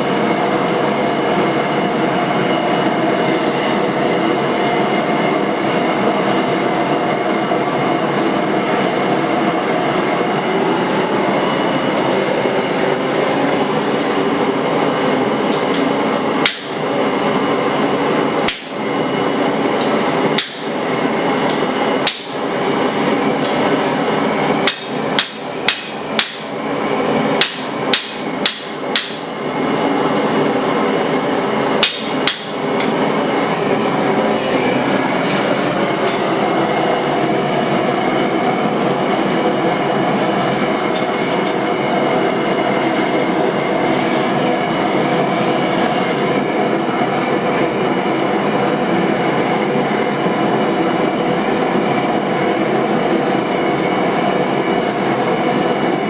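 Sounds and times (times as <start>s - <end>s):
hammer striking hot steel on anvil: 15.5s - 17.2s, 18.4s - 19.0s, 19.7s - 23.8s, 24.6s - 26.6s, 27.4s - 29.4s, 31.7s - 33.6s, 35.2s - 37.0s, 40.4s - 44.3s.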